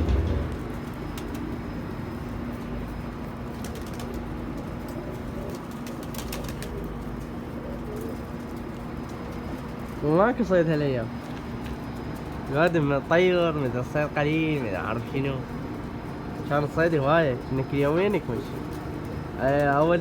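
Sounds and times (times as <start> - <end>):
low thump: 0.0 - 0.8
pigeons cooing: 0.0 - 10.0, 14.2 - 20.0.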